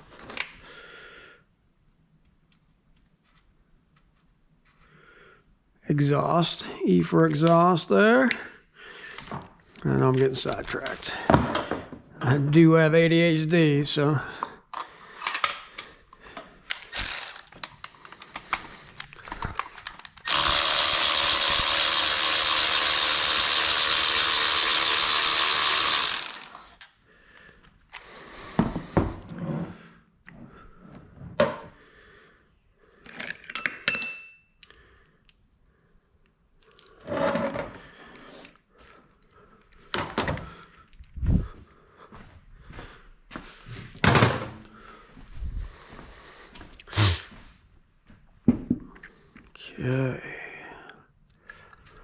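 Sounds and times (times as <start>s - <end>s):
hand tools clicking and knocking: 14.4s - 26.9s
handheld power tool running: 16.9s - 17.5s, 19.5s - 26.8s.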